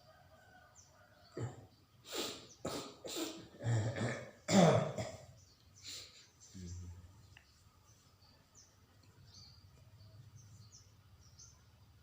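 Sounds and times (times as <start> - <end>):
man coughing harshly: 2.7 - 5.3.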